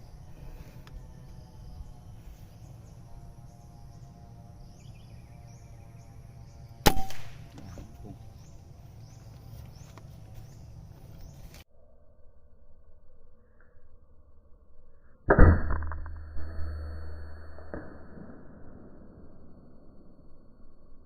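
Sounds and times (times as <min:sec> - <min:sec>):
air rifle shot: 0:06.8 - 0:07.7.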